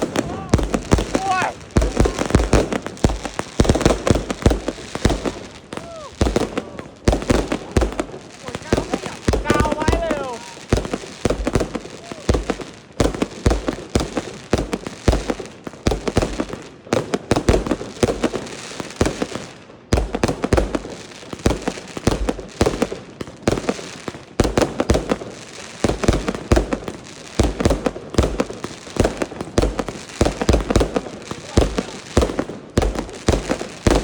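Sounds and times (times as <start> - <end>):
fireworks bangs: 0.0 - 34.0.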